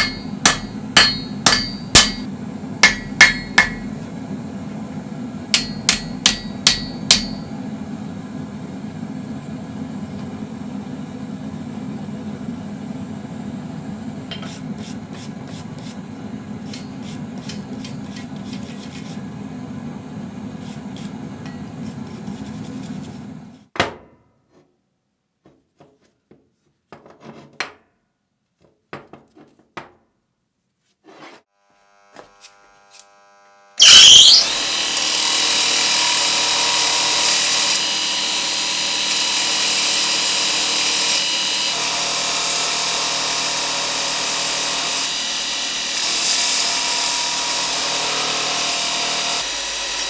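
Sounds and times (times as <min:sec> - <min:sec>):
hammer blows on steel: 0:00.0 - 0:04.0, 0:05.6 - 0:07.5
workshop hum with hiss: 0:00.0 - 0:23.7.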